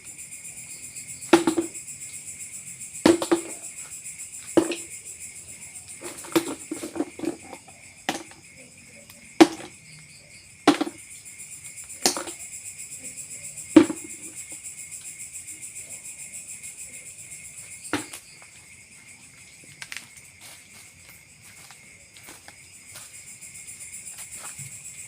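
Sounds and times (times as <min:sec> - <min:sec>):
insects buzzing: 0:00.0 - 0:25.0
sharp knocks: 0:01.3 - 0:01.8, 0:03.1 - 0:03.6, 0:04.6 - 0:04.9, 0:09.4 - 0:09.7, 0:10.7 - 0:11.0, 0:13.8 - 0:14.6, 0:17.9 - 0:18.2.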